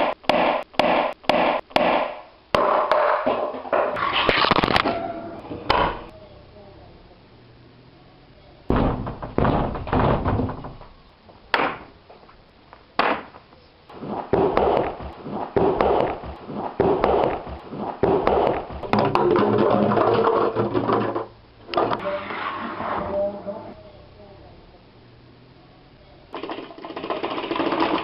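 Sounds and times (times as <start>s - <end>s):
sharp bangs: 0.0s - 6.1s, 8.7s - 12.0s, 13.0s - 19.7s
heavy knocking and thudding: 8.7s - 11.0s, 14.2s - 21.3s
rapid thumps and rattles: 8.7s - 11.0s, 13.9s - 21.4s, 26.3s - 28.0s.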